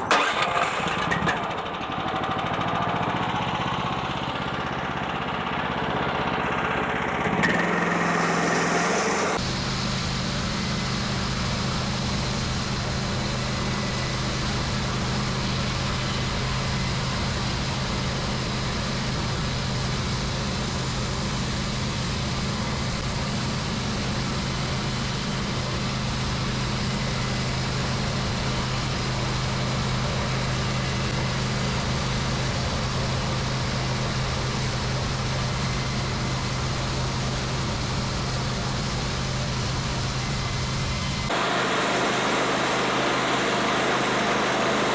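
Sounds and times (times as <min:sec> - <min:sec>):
small engine running: 0:00.0 - 0:17.1, 0:24.0 - 0:44.9.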